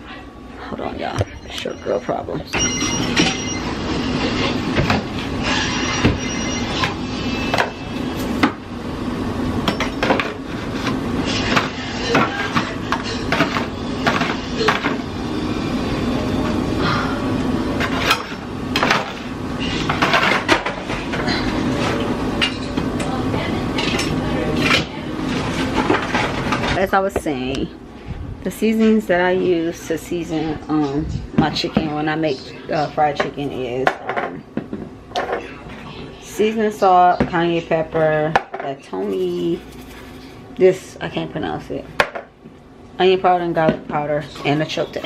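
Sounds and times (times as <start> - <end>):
steady low hum: 0.0 - 45.0
dishes and containers clinking: 9.6 - 15.0, 17.8 - 22.9, 23.8 - 26.9.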